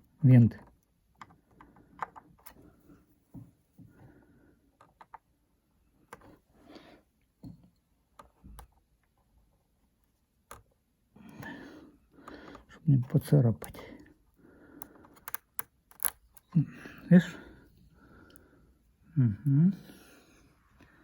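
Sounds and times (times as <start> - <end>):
faint clicks and scrapes of tools: 10.5 - 16.6.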